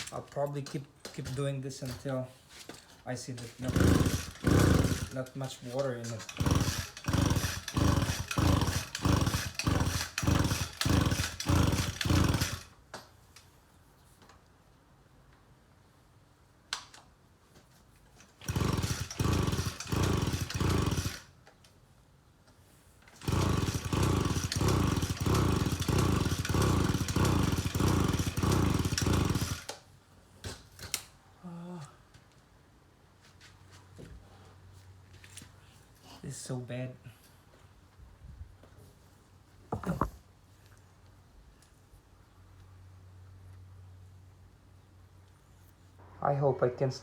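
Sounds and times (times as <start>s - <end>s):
trimmer engine pull-starter yanked: 3.4s - 12.7s, 18.2s - 21.3s, 23.1s - 29.8s.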